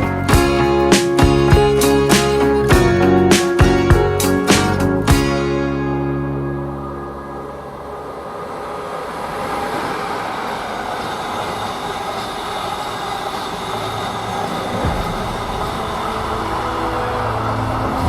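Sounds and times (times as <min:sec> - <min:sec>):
train wheels rolling on rails: 0:06.4 - 0:18.0.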